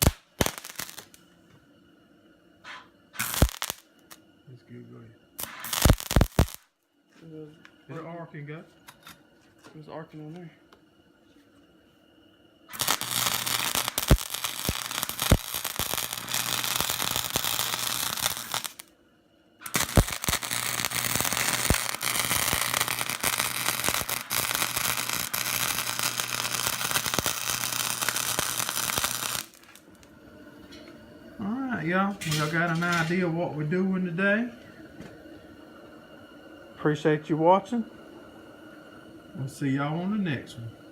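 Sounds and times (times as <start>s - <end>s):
electric arc welding crackle: 0.0s - 1.2s, 2.7s - 4.2s, 5.4s - 6.7s, 12.7s - 18.9s, 19.6s - 30.1s, 31.5s - 34.5s
sharp pops: 0.0s - 1.2s, 5.4s - 6.6s, 19.6s - 29.8s
low hum: 0.2s - 40.9s.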